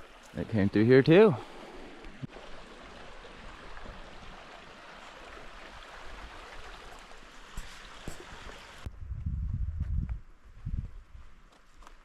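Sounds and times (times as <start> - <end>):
creek flowing over rocks: 0.0 - 8.9.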